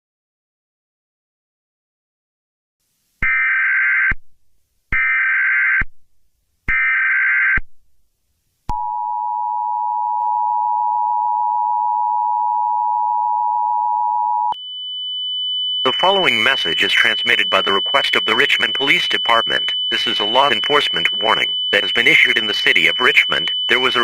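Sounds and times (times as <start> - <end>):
digital data bursts: 15.9 - 24.0
two-tone attention signal: 15.9 - 24.0.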